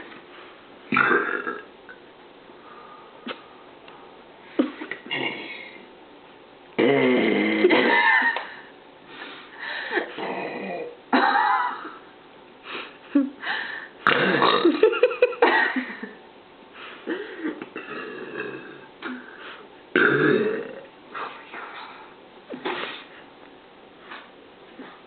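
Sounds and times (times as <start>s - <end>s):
woman belching: 0.9s - 1.7s, 6.8s - 8.3s, 14.0s - 14.8s, 17.8s - 19.2s, 20.0s - 20.9s.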